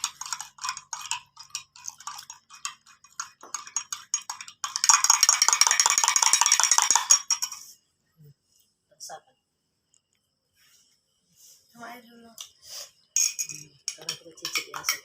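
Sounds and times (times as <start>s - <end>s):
metal spoon clinking in glass: 0.0s - 7.8s, 13.2s - 15.0s.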